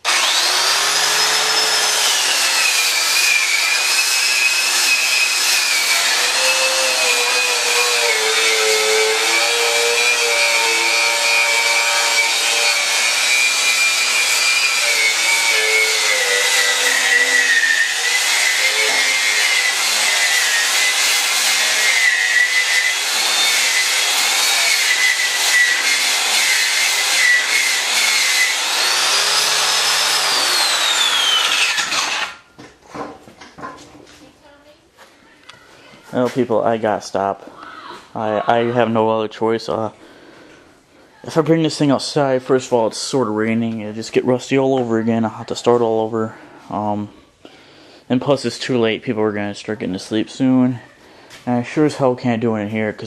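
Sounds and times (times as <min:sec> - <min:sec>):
wire wheel grinder scouring metal: 0:00.0 - 0:32.4.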